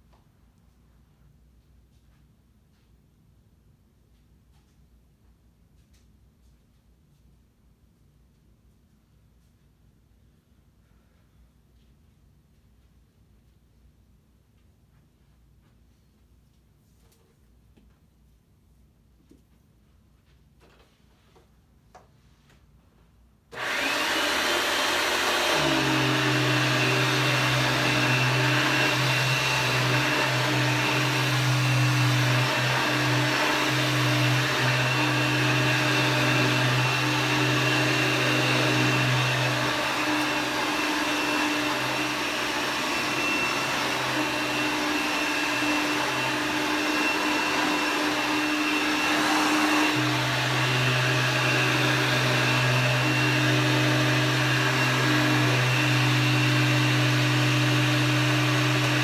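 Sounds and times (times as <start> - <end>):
vacuum cleaner low hum: 23.5 - 59.0
vacuum cleaner motor whine: 23.6 - 59.0.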